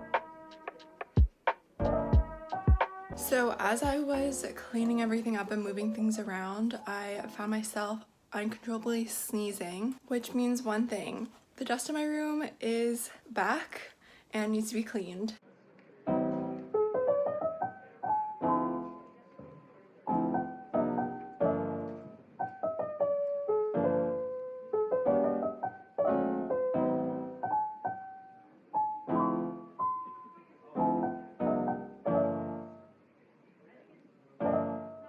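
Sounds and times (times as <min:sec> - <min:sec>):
piano music: 0:00.0 - 0:05.9, 0:16.1 - 0:33.0, 0:34.4 - 0:35.0.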